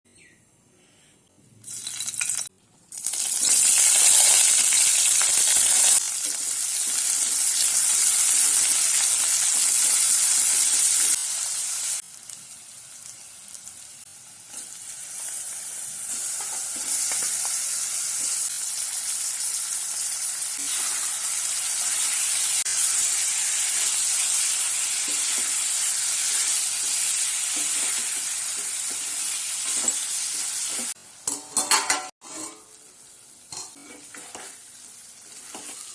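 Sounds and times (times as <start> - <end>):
chicken sizzling in oil: 1.7 - 31.0, 32.6 - 35.9
stirring in a pan: 33.5 - 35.9.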